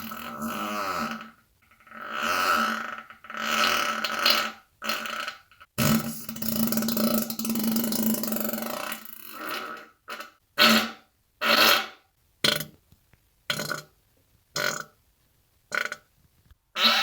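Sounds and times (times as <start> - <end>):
farts: 0.0 - 12.8, 15.7 - 16.1.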